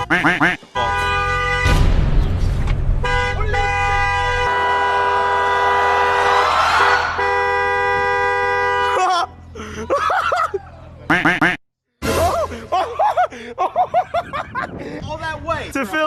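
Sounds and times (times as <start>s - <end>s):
car horn honking: 0.0s - 2.0s, 2.8s - 9.4s
low engine rumble: 0.7s - 6.2s.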